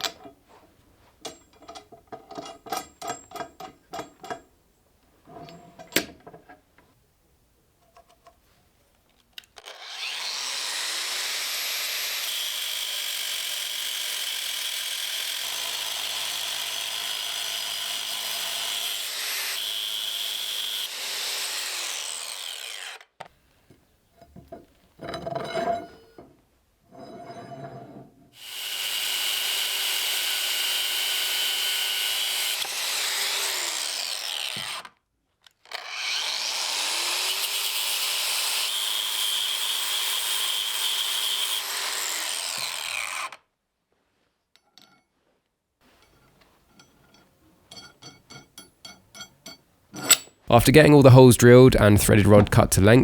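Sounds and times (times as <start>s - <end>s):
power tool whining: 9.6s - 23.0s
workshop clatter and knocking: 24.2s - 26.4s.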